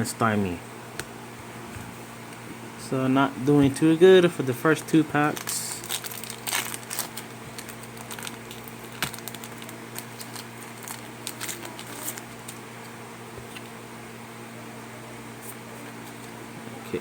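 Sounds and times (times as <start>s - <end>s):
steady low hum: 0.0s - 17.0s
foil pack crinkling: 4.7s - 12.6s.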